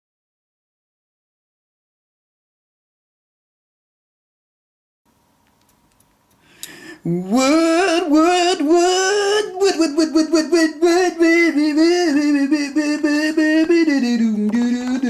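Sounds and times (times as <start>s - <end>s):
person singing unaccompanied: 6.9s - 15.0s.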